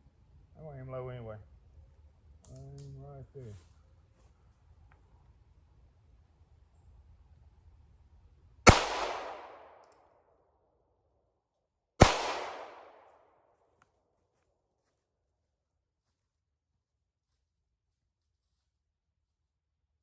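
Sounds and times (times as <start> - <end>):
gunshots with echo: 8.7 - 9.8, 12.0 - 13.1.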